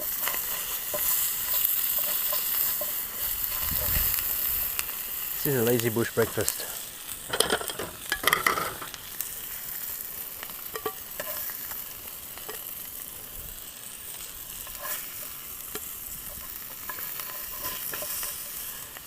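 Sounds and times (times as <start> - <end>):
food sizzling in a pan: 0.0 - 19.0
utensil clattering against pan: 7.3 - 8.9.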